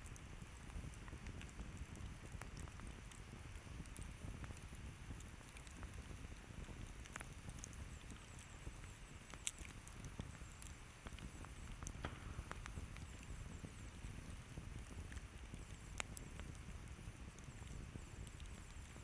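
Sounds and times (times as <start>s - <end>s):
campfire crackling and popping: 0.0s - 19.0s
low steady rumble: 0.0s - 19.0s.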